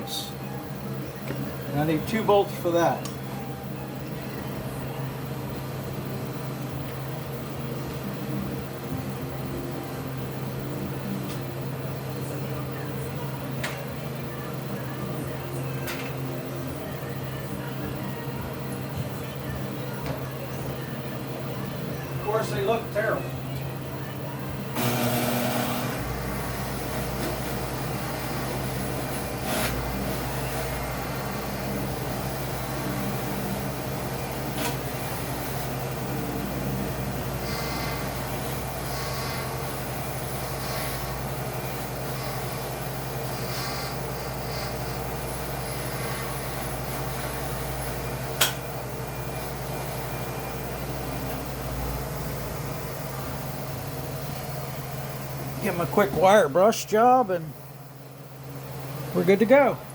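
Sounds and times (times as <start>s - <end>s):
small motor humming and whirring: 3.3s - 55.6s
sharp click: 48.4s - 48.6s.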